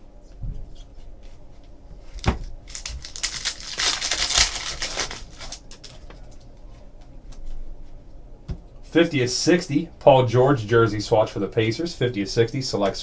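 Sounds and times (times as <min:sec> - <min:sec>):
card pack wrapper tearing: 0:02.7 - 0:06.0.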